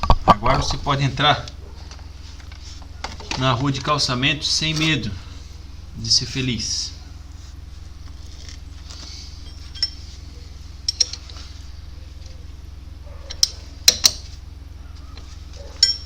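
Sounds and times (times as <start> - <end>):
steady low hum: 0.0 - 16.0
metal tools clinking: 9.4 - 10.2, 10.8 - 11.5, 15.6 - 16.0.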